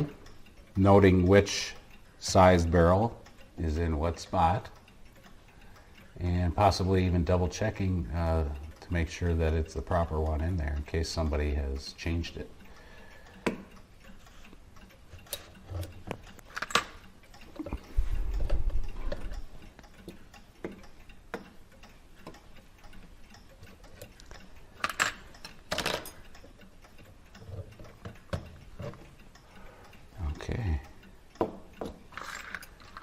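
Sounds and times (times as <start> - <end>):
clicks of small clock parts: 0.0 - 33.0.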